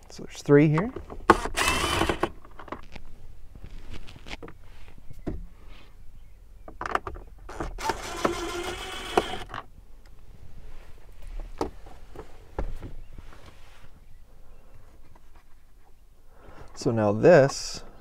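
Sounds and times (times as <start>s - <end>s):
buzzing creak: 7.5s - 9.6s.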